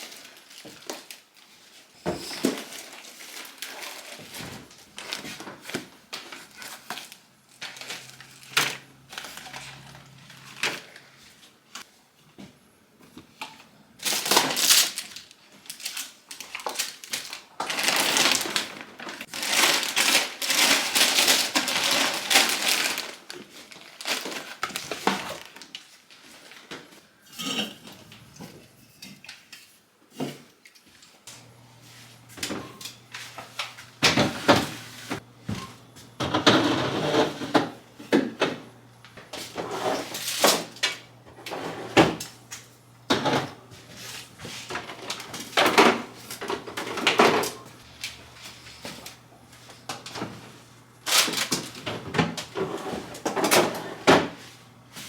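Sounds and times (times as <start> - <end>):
packaging and bags rustling: 0.0 - 11.9, 14.0 - 27.0, 41.9 - 55.0
dishes clattering on counters: 27.3 - 29.3.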